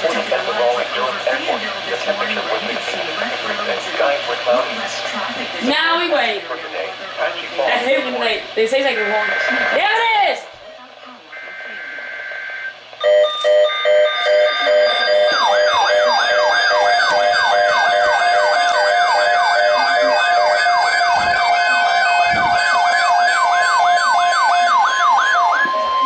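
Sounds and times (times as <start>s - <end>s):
higher warbling alert tones: 8.9s - 10.2s, 11.3s - 26.0s
siren-like alarm tone: 8.9s - 10.2s, 11.3s - 26.0s
short repeated beeps: 9.0s - 9.8s, 11.4s - 15.4s.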